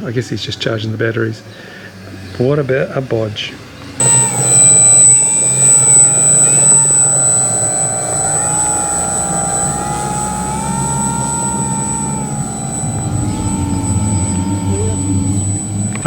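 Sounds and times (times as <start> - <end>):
model aeroplane motor droning: 4.0 - 16.0.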